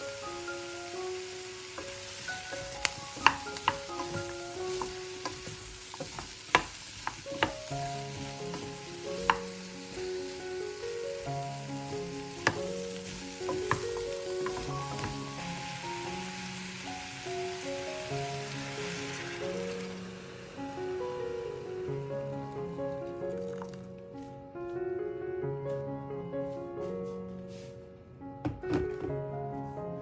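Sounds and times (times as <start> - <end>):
food sizzling in a pot: 0.0 - 23.9
soft melodic background music: 0.0 - 30.0.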